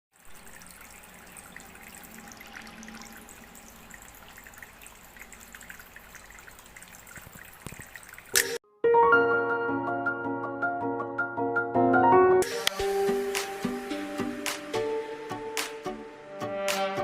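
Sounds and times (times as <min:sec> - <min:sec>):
fountain water trickling and splashing: 0:00.1 - 0:08.6.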